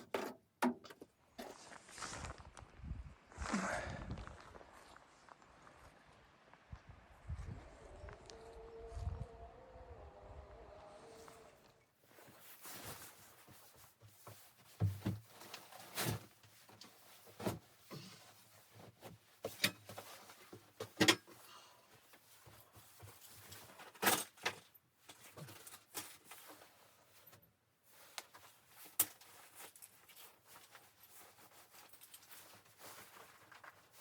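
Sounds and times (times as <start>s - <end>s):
sharp knocks and clatters: 0.0s - 1.5s.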